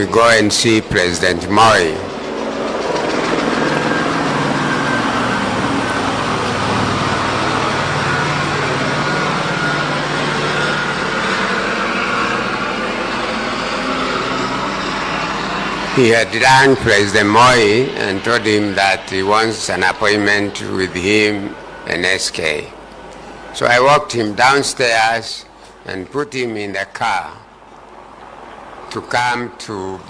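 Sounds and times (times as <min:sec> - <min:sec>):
vehicle engine hum: 0:00.0 - 0:30.0.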